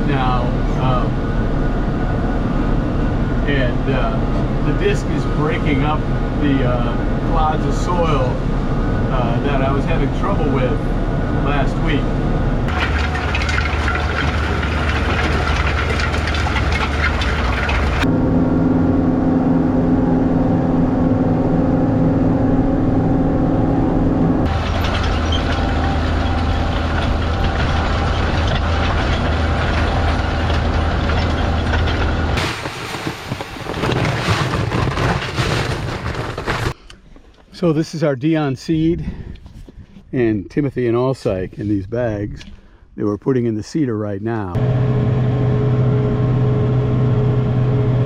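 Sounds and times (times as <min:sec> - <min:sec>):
tractor engine running: 0:00.0 - 0:37.2.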